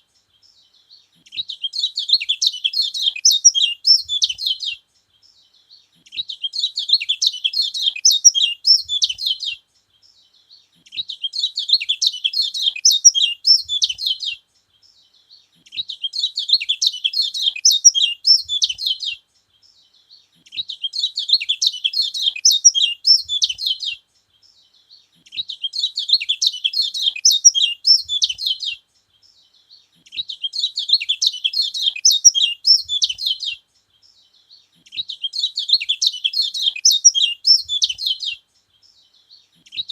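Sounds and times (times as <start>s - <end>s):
bird chattering twitters: 25.4s - 28.7s, 30.1s - 33.5s, 34.9s - 38.3s.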